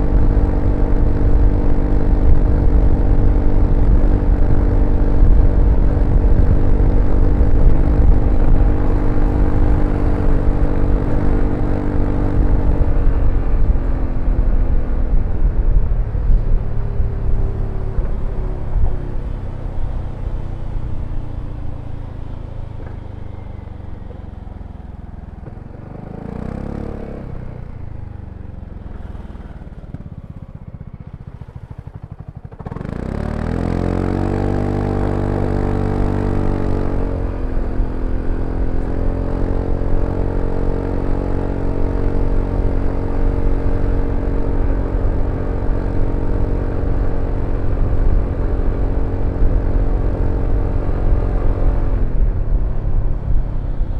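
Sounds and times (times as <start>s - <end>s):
scooter engine revving: 25.5s - 52.3s.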